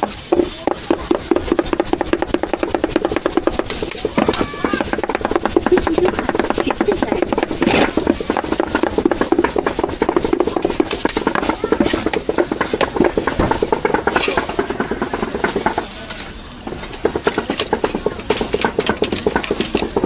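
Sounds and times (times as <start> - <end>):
cleaver chopping on wooden block: 0.0 - 14.7.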